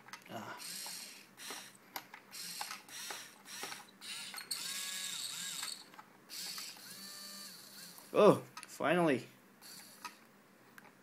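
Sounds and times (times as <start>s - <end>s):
small motors whirring and ratcheting: 0.6s - 8.2s, 9.6s - 10.2s.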